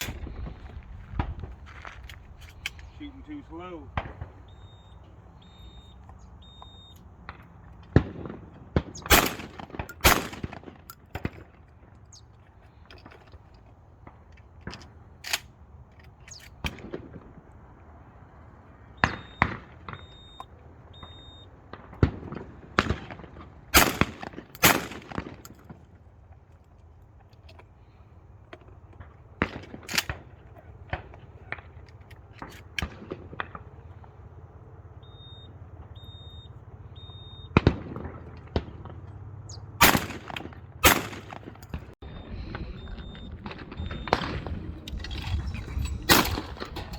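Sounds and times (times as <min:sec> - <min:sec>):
faint distant bangs: 0:00.0 - 0:12.0
shotgun shots: 0:08.0 - 0:11.4, 0:21.8 - 0:25.7, 0:39.8 - 0:42.7, 0:46.1 - 0:46.9
short high beeps: 0:35.0 - 0:37.5, 0:42.1 - 0:44.5.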